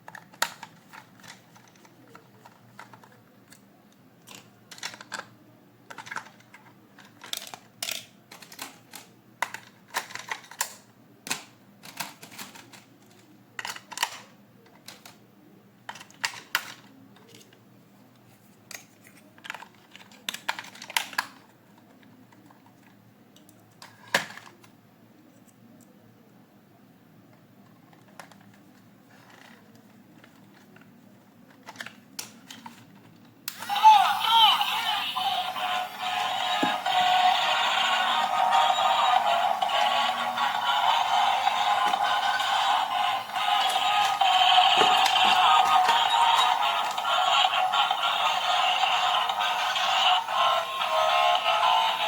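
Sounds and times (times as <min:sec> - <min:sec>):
plastic toy packaging crinkling: 0:00.1 - 0:03.2, 0:19.4 - 0:21.5.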